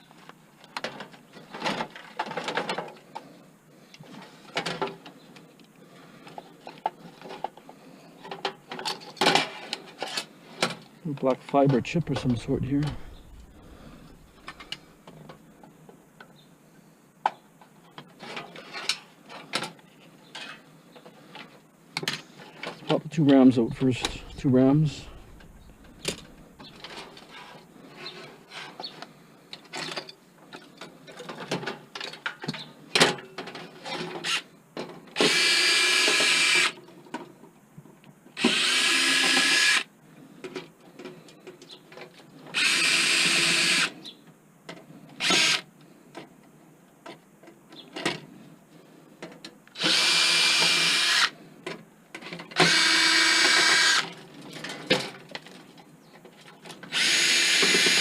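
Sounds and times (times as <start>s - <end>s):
cordless drill driving screws: 35.2s - 36.8s, 38.4s - 39.9s, 42.6s - 43.9s, 45.2s - 45.6s, 49.8s - 51.3s, 52.6s - 54.0s, 56.9s - 58.0s.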